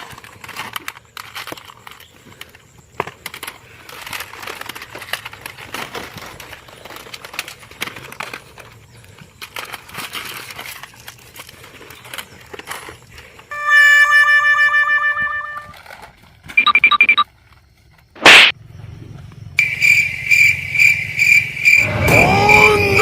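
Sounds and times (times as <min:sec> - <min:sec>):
plastic rustling and crinkling: 0:00.0 - 0:13.5, 0:15.1 - 0:16.6.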